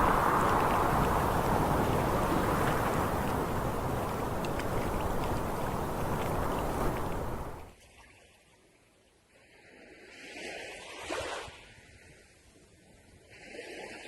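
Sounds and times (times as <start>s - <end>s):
drone air whoosh: 0.0s - 3.3s.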